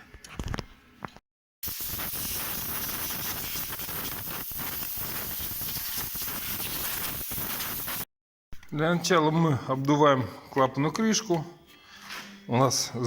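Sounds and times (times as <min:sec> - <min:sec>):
compressed air blow gun hissing: 0:01.6 - 0:08.0.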